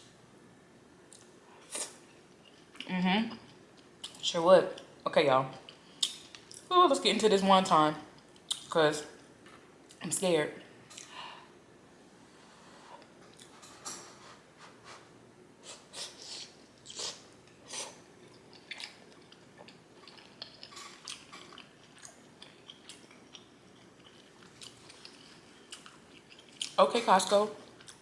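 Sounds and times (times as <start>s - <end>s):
person chewing food: 15.7s - 26.8s, 27.7s - 28.0s.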